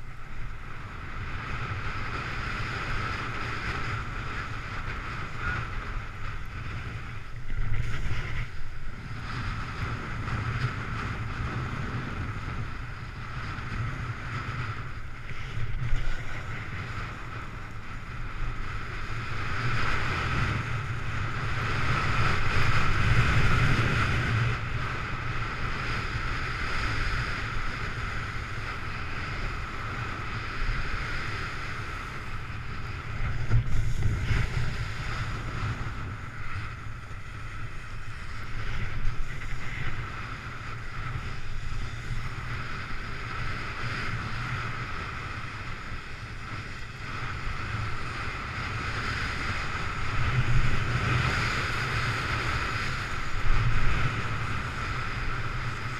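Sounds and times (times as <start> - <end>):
snowboard sliding over snow: 0.0 - 55.9
wind on microphone: 0.0 - 55.9.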